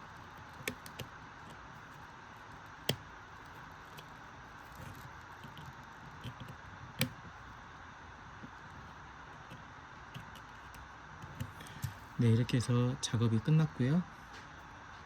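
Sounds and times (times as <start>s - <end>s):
light handling ticks: 0.0s - 7.4s.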